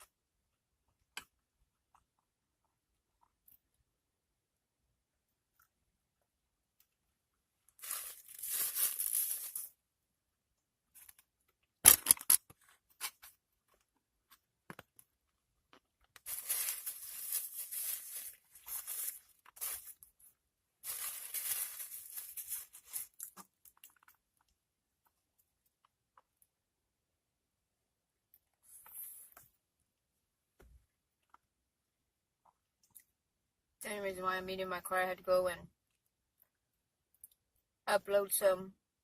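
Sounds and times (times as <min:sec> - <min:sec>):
packaging rustling and tearing: 0:07.8 - 0:09.7, 0:16.2 - 0:20.1, 0:20.8 - 0:23.4.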